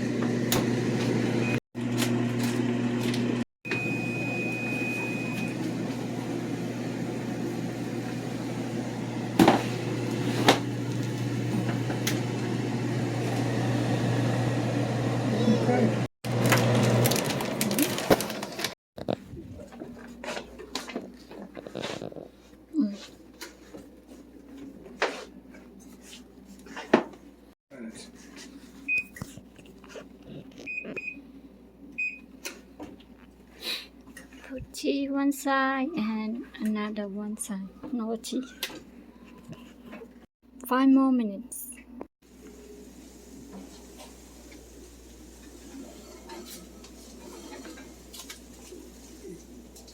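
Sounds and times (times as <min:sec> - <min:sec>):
kitchen appliance humming: 0:00.0 - 0:18.8, 0:42.3 - 0:49.9.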